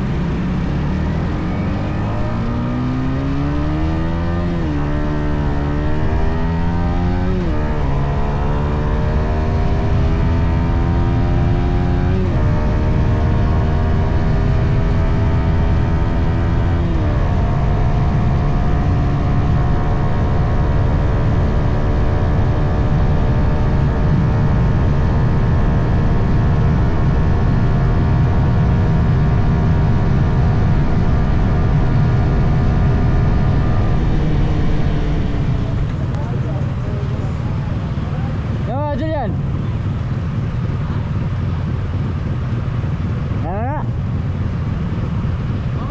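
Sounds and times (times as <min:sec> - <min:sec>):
motorcycle engine running: 0:00.0 - 0:45.9
low rush of noise: 0:31.4 - 0:45.9.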